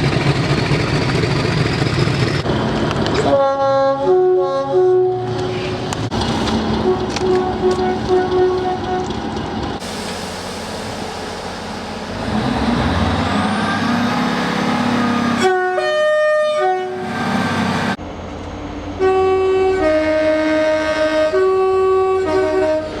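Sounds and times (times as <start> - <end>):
train engine rumble: 0.0 - 23.0
train air horn chord: 6.8 - 9.1, 15.4 - 17.4, 19.0 - 23.0.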